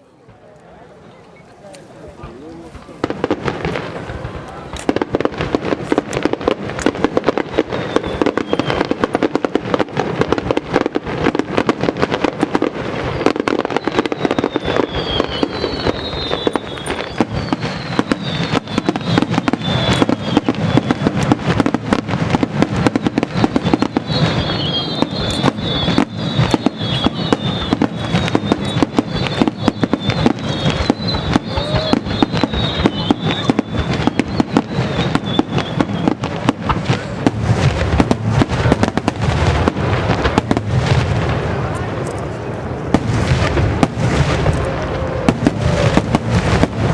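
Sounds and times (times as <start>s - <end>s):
fireworks whistling: 0.0s - 46.9s
fireworks shell bursts: 22.7s - 33.5s.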